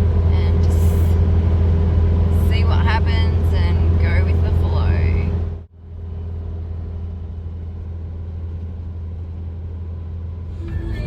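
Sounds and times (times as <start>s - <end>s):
road rumble and engine hum: 0.0s - 11.0s
music: 10.5s - 11.0s.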